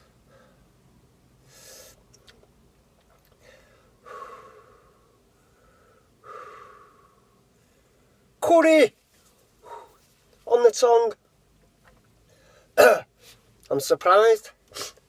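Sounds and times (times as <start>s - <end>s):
man breathing heavily: 0.0s - 0.8s, 1.4s - 2.1s, 3.3s - 8.4s, 9.6s - 10.1s, 12.2s - 13.5s.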